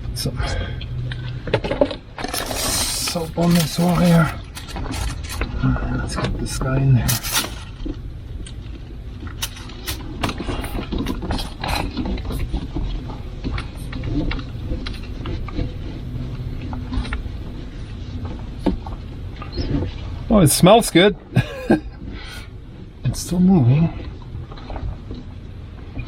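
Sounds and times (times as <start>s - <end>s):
low steady rumble: 0.0s - 26.0s
cable scraping in conduit: 2.2s - 5.7s, 7.1s - 7.8s.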